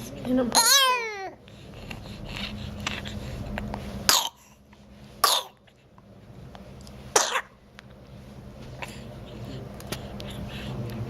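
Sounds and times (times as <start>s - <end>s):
young child coughing: 4.1s - 4.4s, 5.2s - 5.6s, 7.2s - 7.6s.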